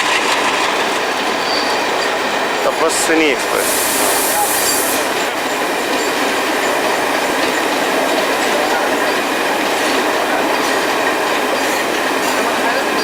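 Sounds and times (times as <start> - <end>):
train in motion: 0.0 - 13.0.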